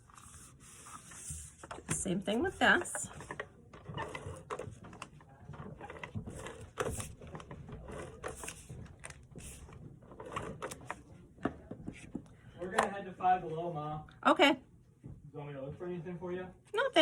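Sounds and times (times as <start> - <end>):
paper rustling and tapping: 0.0 - 13.0.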